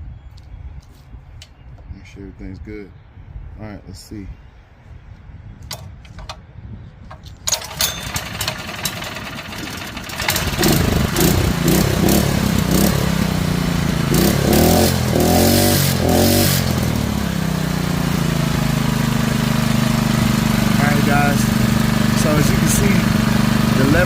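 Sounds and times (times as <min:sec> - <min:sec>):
engine starter clicks: 0:07.5 - 0:11.8
small engine running: 0:07.5 - 0:24.0.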